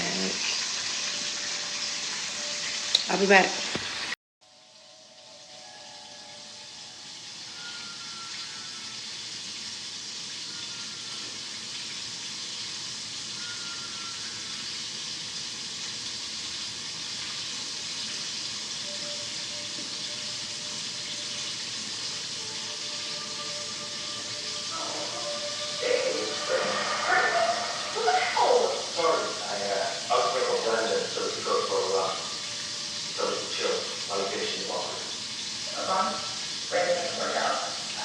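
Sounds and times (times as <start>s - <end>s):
steady hissing noise: 17.4s - 38.0s
faint tones: 22.4s - 34.8s.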